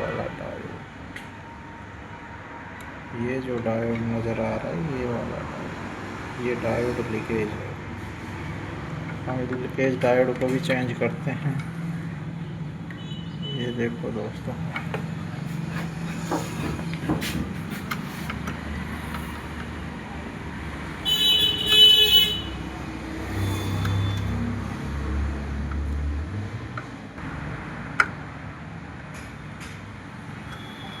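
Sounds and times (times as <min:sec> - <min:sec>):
vehicle horn honking: 0:21.0 - 0:22.7.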